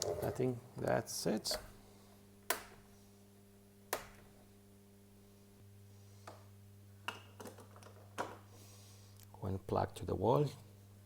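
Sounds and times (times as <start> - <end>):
steady low hum: 0.0 - 7.4.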